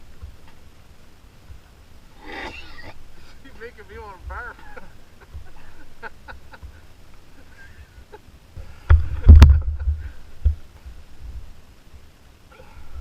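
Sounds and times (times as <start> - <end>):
man hacking and retching: 2.2 - 3.0.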